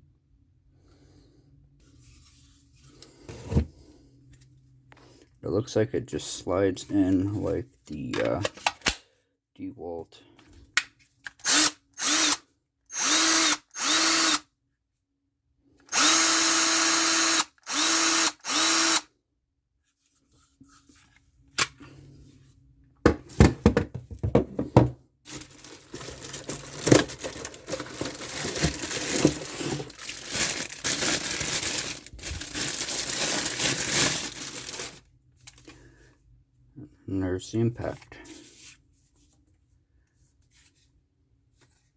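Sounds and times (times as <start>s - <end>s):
cordless drill motor whine: 11.4s - 14.4s, 15.9s - 19.1s
tools and packaging clattering: 23.3s - 35.8s.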